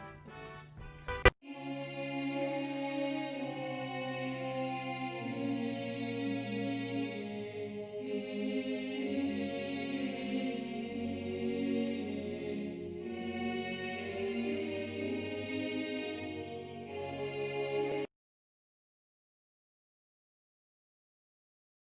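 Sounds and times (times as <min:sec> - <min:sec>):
background music of held tones: 0:00.0 - 0:01.3.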